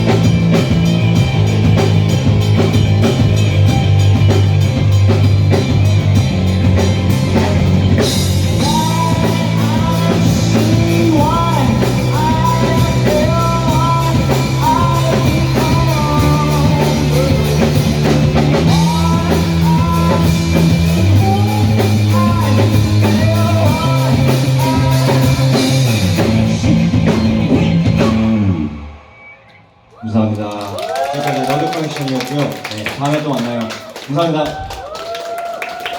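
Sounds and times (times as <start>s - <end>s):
rock band playing: 0.0s - 34.8s
person singing: 8.5s - 26.8s.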